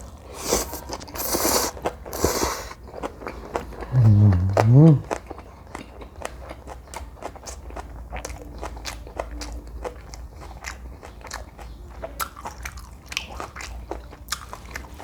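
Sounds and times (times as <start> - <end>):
chewing crunches: 0.0 - 5.4
wet mouth clicks: 0.3 - 2.8, 3.8 - 5.2.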